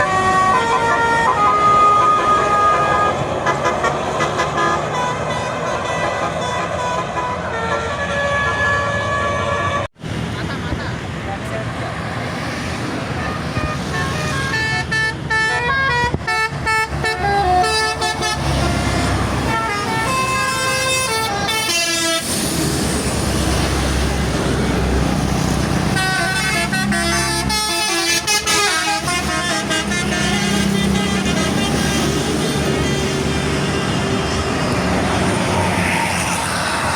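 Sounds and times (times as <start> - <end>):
musical bus horn melody: 0.0 - 9.9, 13.2 - 22.5, 25.8 - 34.3
bus engine rumble: 0.0 - 36.9.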